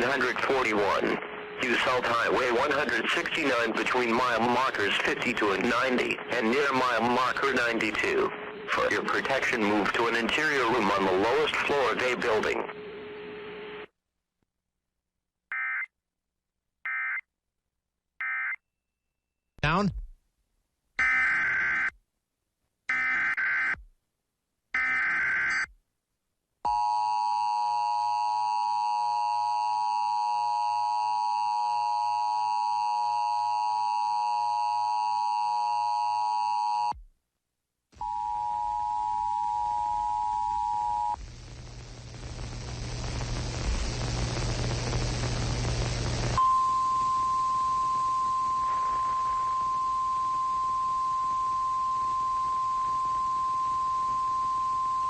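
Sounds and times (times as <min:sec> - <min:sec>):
radio static: 0:00.0 - 0:12.8, 0:39.9 - 0:46.4.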